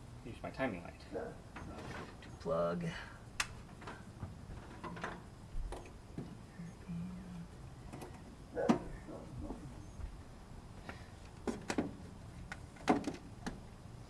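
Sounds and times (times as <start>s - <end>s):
sharp knocks and clatters: 11.4s - 13.6s.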